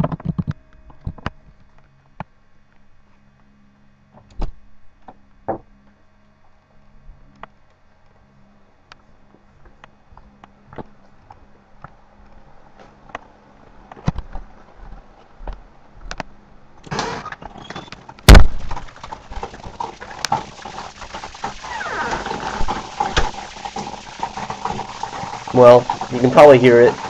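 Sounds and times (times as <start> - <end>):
heavy rain hissing: 19.6 - 27.0.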